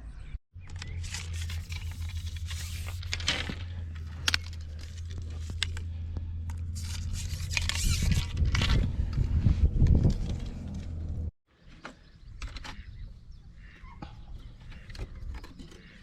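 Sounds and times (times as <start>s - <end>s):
steady low hum: 0.6s - 11.3s
scraping rustling and clicking: 0.7s - 11.3s.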